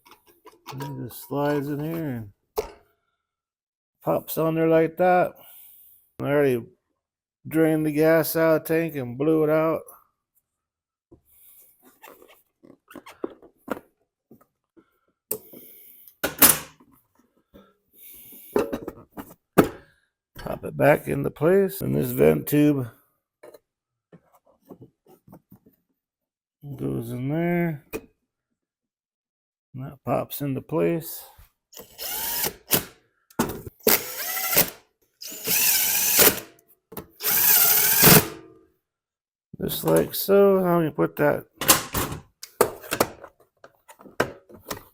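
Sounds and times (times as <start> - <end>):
parts clattering: 0.0 - 2.8
cordless drill running: 31.8 - 32.9, 33.8 - 36.5, 37.2 - 38.4.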